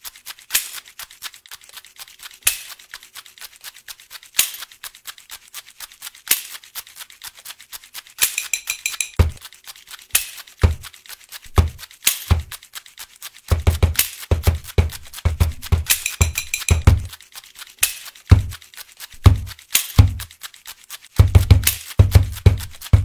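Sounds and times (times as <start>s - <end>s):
ticking clicks: 8.2s - 9.5s, 13.5s - 17.2s, 21.2s - 23.0s
low thuds: 9.2s - 9.4s, 11.5s - 12.5s, 13.5s - 16.0s, 16.7s - 17.1s, 18.3s - 18.6s, 19.2s - 20.2s, 21.2s - 23.0s.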